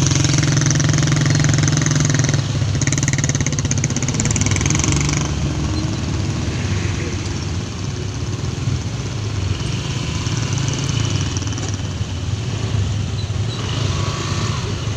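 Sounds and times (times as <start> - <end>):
car engines idling: 0.0 - 13.5
road noise: 0.0 - 14.9.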